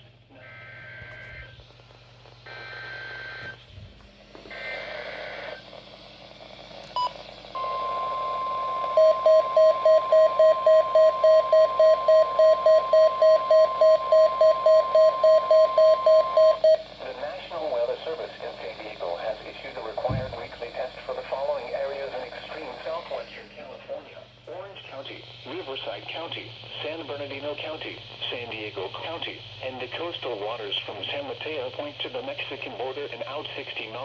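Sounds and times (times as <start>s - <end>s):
steady warning alarm tone: 7.0s - 23.3s.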